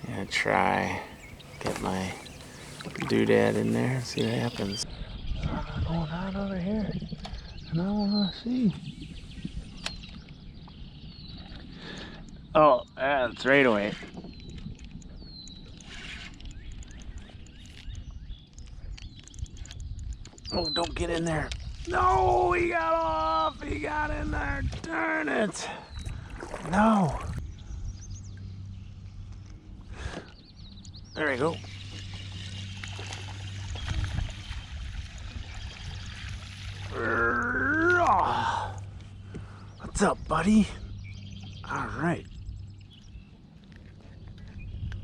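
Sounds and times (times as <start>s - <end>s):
water rumbling and splashing: 0.0s - 4.8s, 26.1s - 27.4s, 31.6s - 38.9s
scattered clicks: 13.8s - 21.9s.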